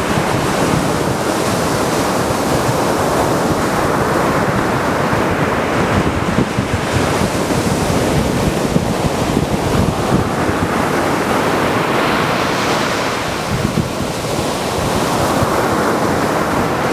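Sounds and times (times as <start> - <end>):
waves breaking on a beach: 0.0 - 16.9
wind buffeting microphone: 0.0 - 16.9.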